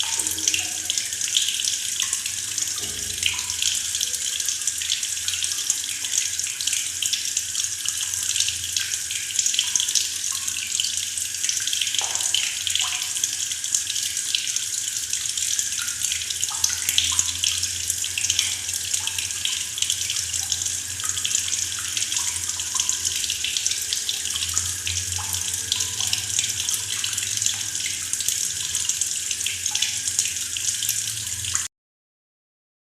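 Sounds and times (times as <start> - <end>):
tap water running into bucket: 0.0 - 31.7.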